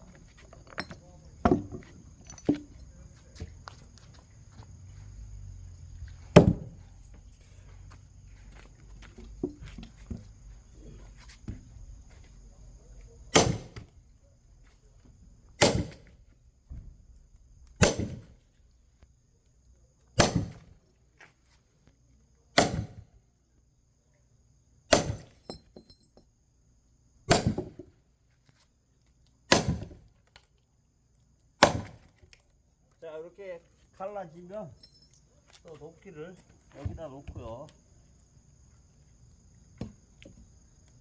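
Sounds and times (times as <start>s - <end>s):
axe chopping log: 6.3s - 6.8s, 13.3s - 13.9s, 15.6s - 16.2s, 17.8s - 18.3s, 20.2s - 20.8s, 22.6s - 23.1s, 24.9s - 25.4s, 27.3s - 27.9s, 29.5s - 30.1s, 31.6s - 32.2s.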